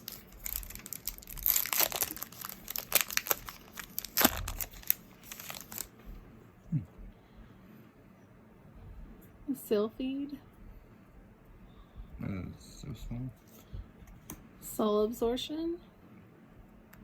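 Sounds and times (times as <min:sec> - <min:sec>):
foil wrapper crinkling: 0:00.0 - 0:06.0.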